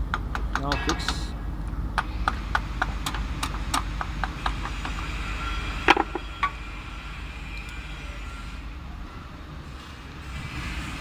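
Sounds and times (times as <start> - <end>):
metal clank: 5.9 - 6.6.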